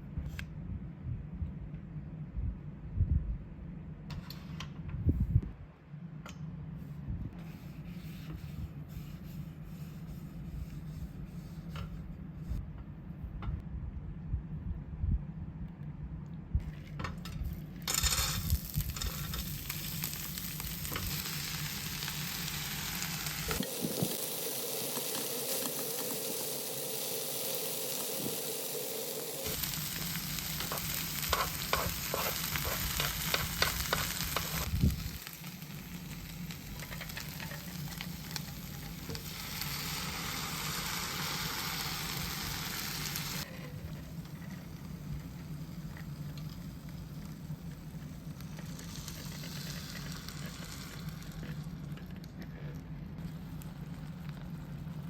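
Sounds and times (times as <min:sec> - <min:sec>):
food sizzling on a hot plate: 0:17.9 - 0:43.5, 0:44.7 - 0:51.5
spatula scraping and chopping: 0:31.3 - 0:34.6.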